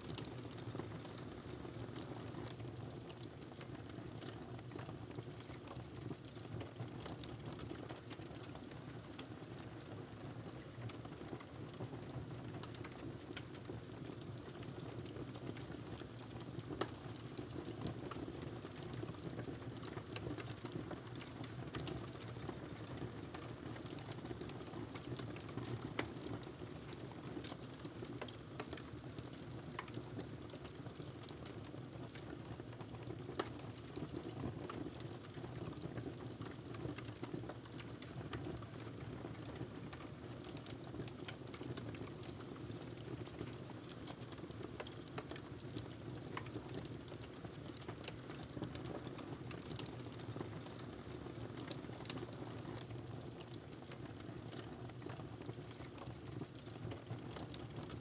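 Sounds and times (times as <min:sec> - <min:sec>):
wood fire crackling: 0:12.5 - 0:58.0.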